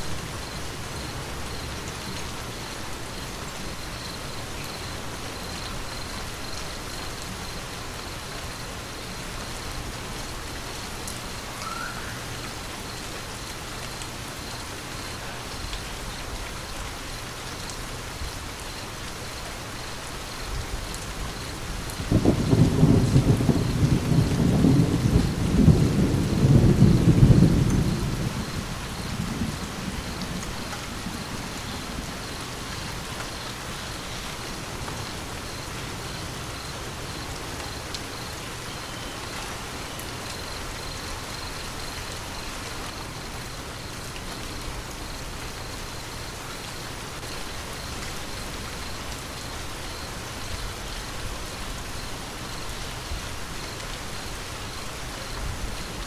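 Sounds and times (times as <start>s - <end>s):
steady rain falling: 0.0s - 56.0s
thunderclap rumbling: 21.8s - 33.0s.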